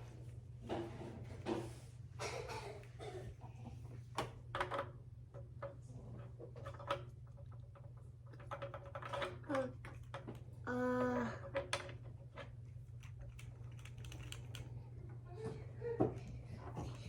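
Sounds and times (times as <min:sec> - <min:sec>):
plastic parts clicking: 0:11.4 - 0:14.7.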